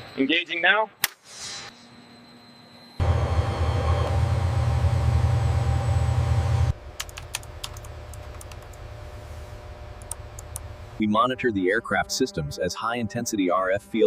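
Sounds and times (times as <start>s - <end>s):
loud mechanical rumble: 3.0s - 11.4s.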